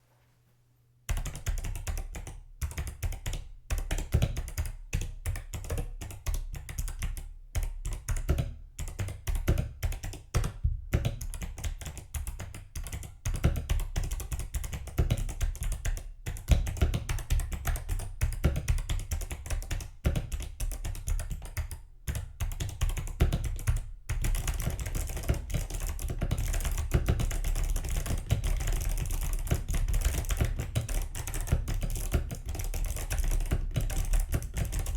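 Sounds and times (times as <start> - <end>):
mechanical keyboard typing: 11.2 - 34.9.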